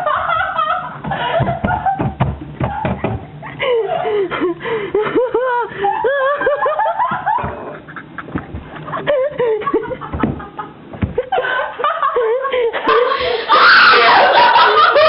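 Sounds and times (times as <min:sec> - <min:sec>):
person laughing hard: 0:00.0 - 0:15.0.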